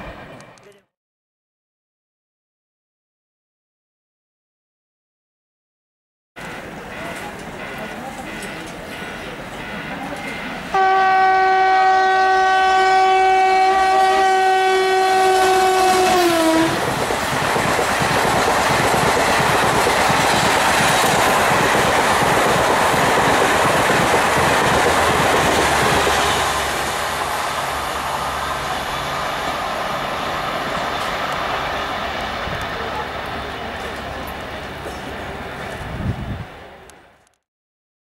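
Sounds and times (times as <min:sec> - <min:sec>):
locomotive horn: 0:10.0 - 0:16.8
train wheels clattering past: 0:15.2 - 0:35.9.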